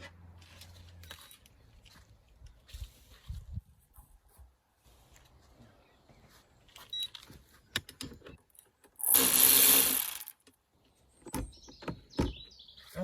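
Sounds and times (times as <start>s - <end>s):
power tool running: 9.0s - 10.3s
sharp tool clicks: 9.0s - 10.4s.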